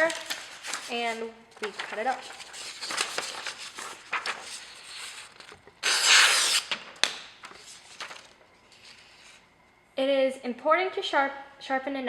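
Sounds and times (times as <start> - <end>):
paper rustling: 0.0 - 9.4
knife slicing through paper: 5.8 - 6.8.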